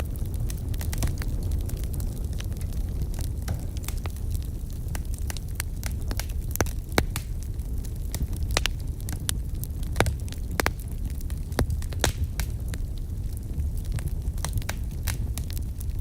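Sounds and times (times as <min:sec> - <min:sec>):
campfire crackling and popping: 0:00.0 - 0:16.0
steady low rumble: 0:00.0 - 0:16.0.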